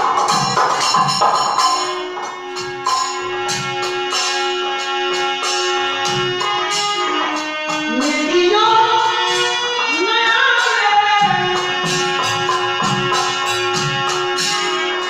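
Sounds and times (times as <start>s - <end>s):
jingling percussion: 0.0s - 9.5s
steady drum beat: 0.0s - 15.0s.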